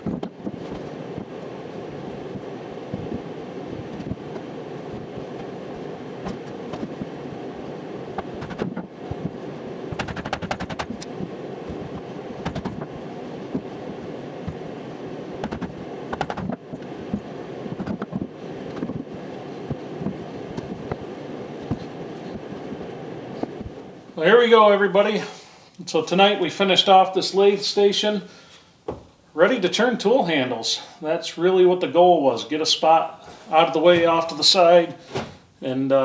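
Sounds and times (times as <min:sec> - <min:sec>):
steady hum: 0:00.0 - 0:36.0
sharp knocks and clatter: 0:09.9 - 0:11.1, 0:11.7 - 0:12.9, 0:15.4 - 0:17.2.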